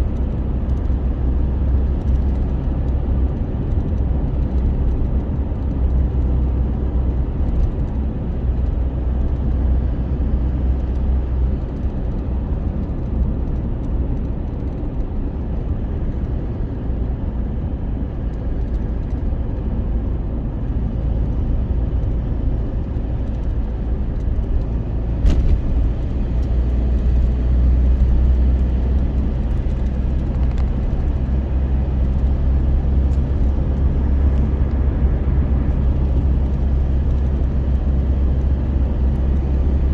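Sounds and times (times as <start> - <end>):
vehicle engine rumbling: 0.0 - 39.9.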